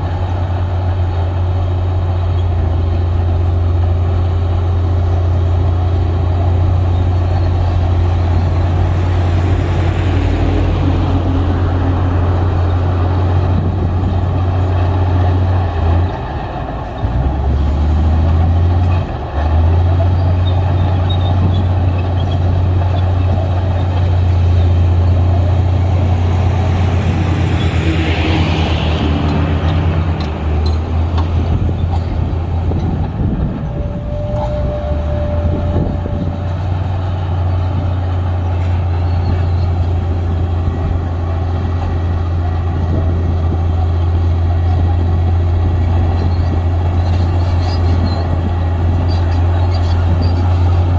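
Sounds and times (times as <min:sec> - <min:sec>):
heavy diesel engine droning: 0:00.0 - 0:50.9.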